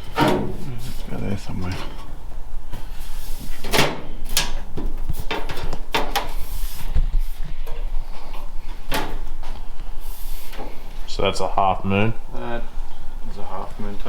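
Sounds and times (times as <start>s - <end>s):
rustling scrapes: 2.7s - 3.7s, 6.3s - 8.9s.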